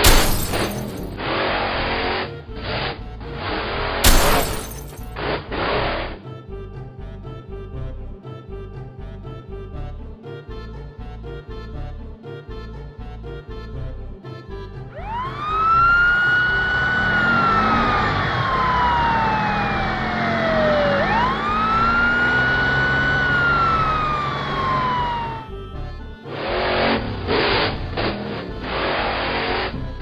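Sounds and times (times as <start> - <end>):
cartoon siren wailing: 15.0 - 25.8.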